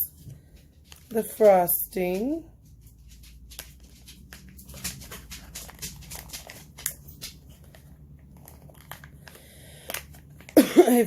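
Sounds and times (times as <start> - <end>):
plastic pouch crinkling: 2.9 - 10.6.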